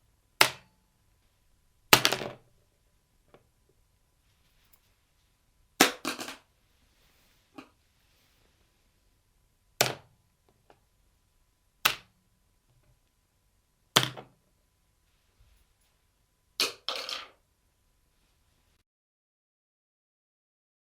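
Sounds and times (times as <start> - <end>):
small objects hitting hard surface: 16.6 - 17.3.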